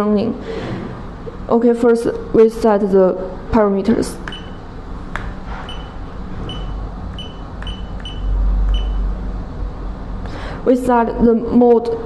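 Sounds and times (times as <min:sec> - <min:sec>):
steady low hum: 0:00.0 - 0:12.0
short high keypad beeps: 0:04.3 - 0:04.6, 0:05.7 - 0:09.1.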